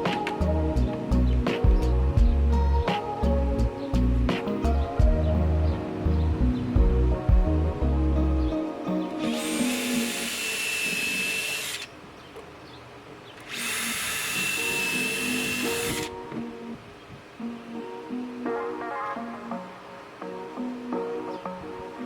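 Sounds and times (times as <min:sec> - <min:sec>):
background music: 0:00.0 - 0:11.9, 0:13.5 - 0:22.0
power drill whine: 0:09.2 - 0:11.9, 0:13.4 - 0:16.2.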